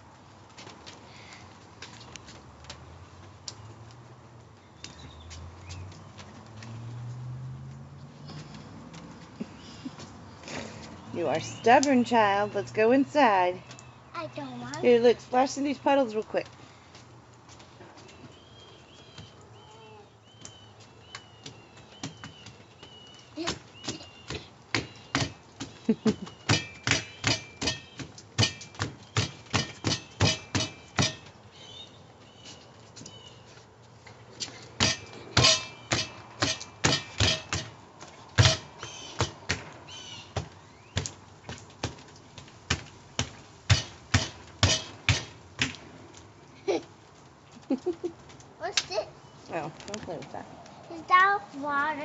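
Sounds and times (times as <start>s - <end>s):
bird chirping: 18.0s - 33.6s
sharp knocks or slaps: 42.7s - 45.8s.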